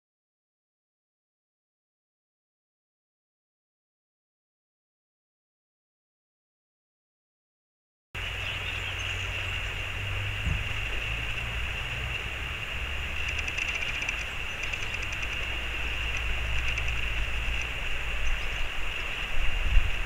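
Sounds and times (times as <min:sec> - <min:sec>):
mountain stream rushing: 0:08.2 - 0:20.0
wind rumble on microphone: 0:08.2 - 0:20.0
faint rapid high chirping: 0:13.2 - 0:19.3.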